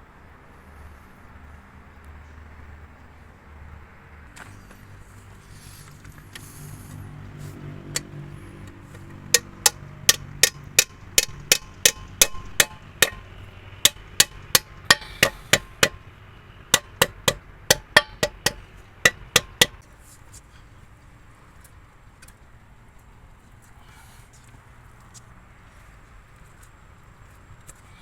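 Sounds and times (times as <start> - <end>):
hammer striking metal: 9.0 - 16.1, 16.7 - 19.8.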